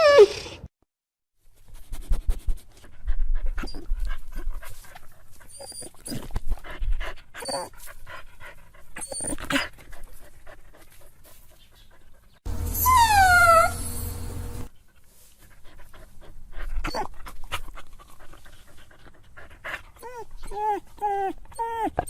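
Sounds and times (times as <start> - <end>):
dog whining with falling yelps: 0.0 - 0.6, 5.5 - 6.3, 7.4 - 7.7, 9.0 - 9.7, 12.6 - 14.4, 16.9 - 17.1, 20.0 - 22.0
dog panting: 2.6 - 14.0, 14.7 - 21.1.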